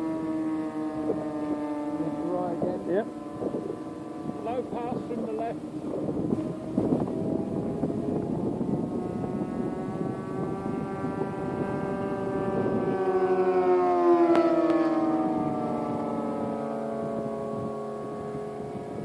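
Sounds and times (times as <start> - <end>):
model airplane engines droning: 0.0 - 19.0
wind buffeting microphone: 0.0 - 19.0.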